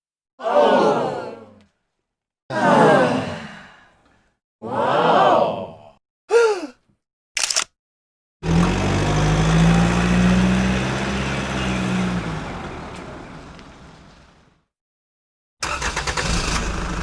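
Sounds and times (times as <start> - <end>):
vehicle engine humming: 8.4 - 14.5.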